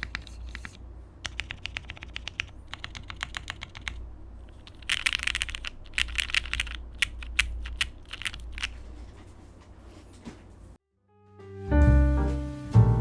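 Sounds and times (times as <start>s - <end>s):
typing on mechanical keyboard: 0.0s - 8.8s.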